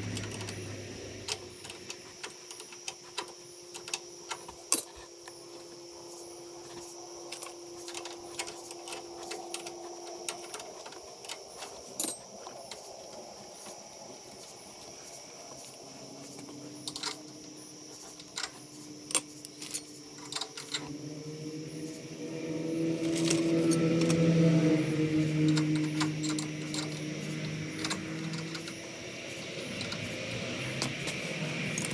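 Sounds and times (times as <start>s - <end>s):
faint steady hum: 0.0s - 31.9s
light metallic clicks and clinks: 1.3s - 5.4s, 7.3s - 14.9s, 15.6s - 20.9s, 25.4s - 31.9s.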